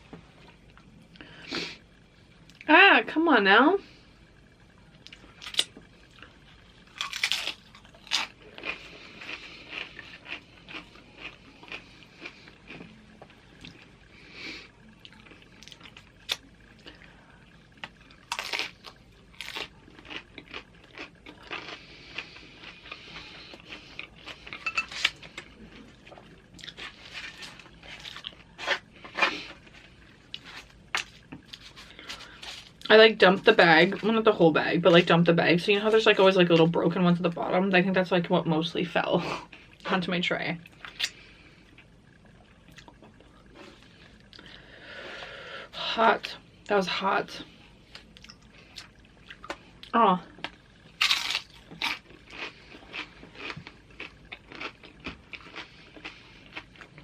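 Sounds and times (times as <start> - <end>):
chewing crunchy chips: 5.0 - 14.2, 14.8 - 32.9, 47.9 - 57.0.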